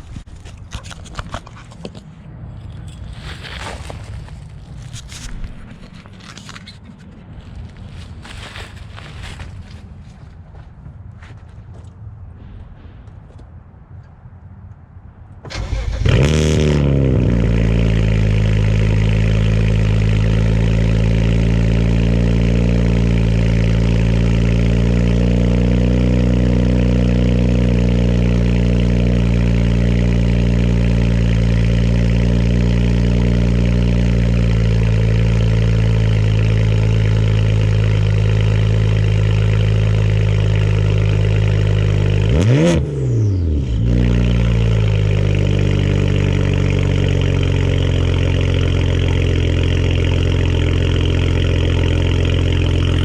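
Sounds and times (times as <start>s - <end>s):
car engine idling: 15.4s - 53.0s
engine revving: 15.5s - 53.0s.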